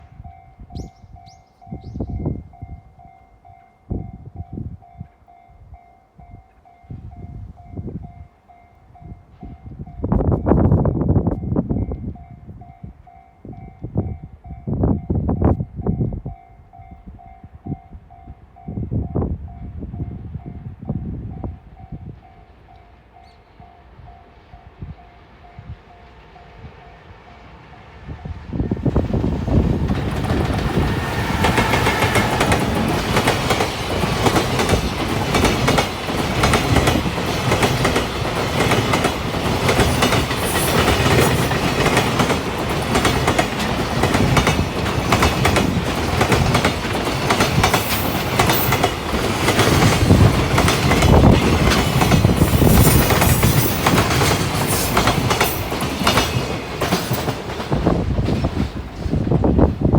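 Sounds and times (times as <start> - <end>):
freight train passing: 0.0 - 59.9
wheels clattering over rail joints: 28.8 - 59.9.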